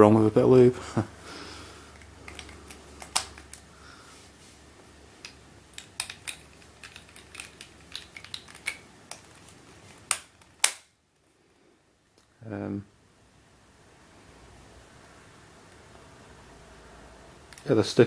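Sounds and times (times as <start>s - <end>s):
puzzle cube layers clicking: 5.2s - 10.8s.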